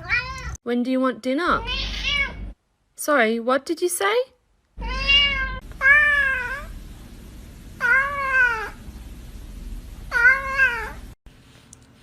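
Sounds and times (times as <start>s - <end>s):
cat meowing: 0.0s - 0.6s, 1.6s - 2.4s, 4.8s - 6.7s, 7.8s - 8.8s, 10.1s - 11.0s.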